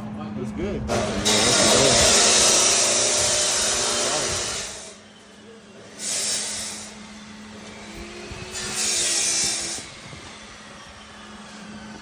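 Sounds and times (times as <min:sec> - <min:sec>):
loud burst of hissing: 0:00.9 - 0:05.0.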